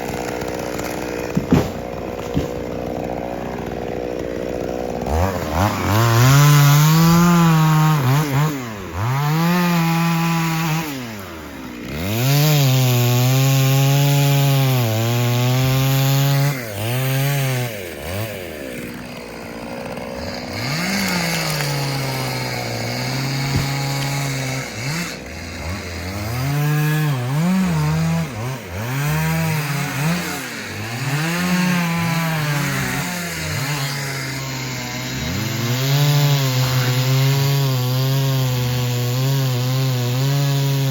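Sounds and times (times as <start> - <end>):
chainsaw cutting through tree: 0.0 - 40.9.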